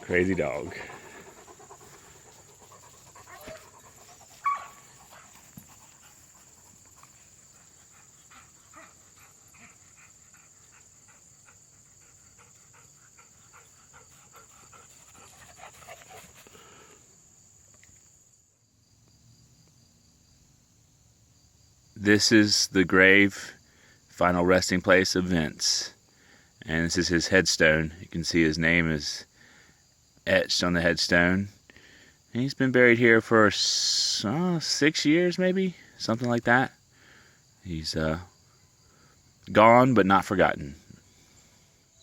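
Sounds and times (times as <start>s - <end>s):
dog panting: 0.0s - 16.8s.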